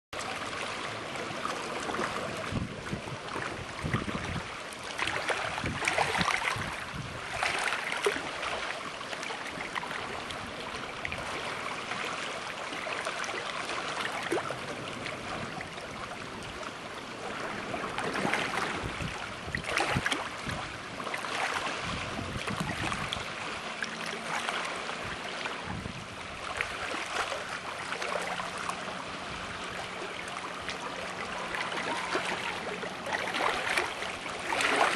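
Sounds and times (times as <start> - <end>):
water splashing past a boat: 0.2 - 34.9
wind buffeting the microphone: 1.9 - 7.6, 14.3 - 23.6, 24.8 - 27.1.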